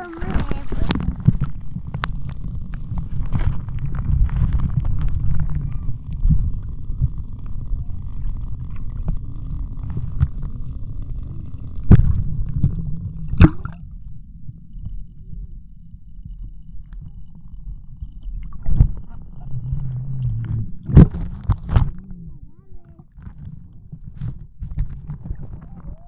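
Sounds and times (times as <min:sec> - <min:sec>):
underwater pops: 0:00.0 - 0:07.6, 0:11.8 - 0:13.8, 0:18.4 - 0:25.9
underwater geothermal rumbling: 0:00.0 - 0:26.0.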